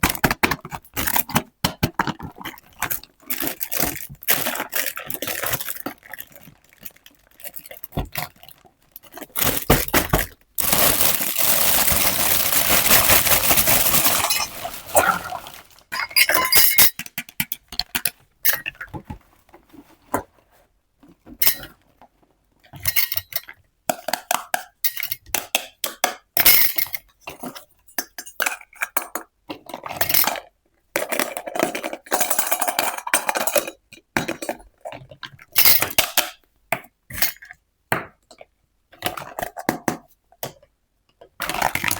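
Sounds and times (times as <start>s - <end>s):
toy dishes clinking: 11.9s - 15.2s, 15.9s - 17.0s.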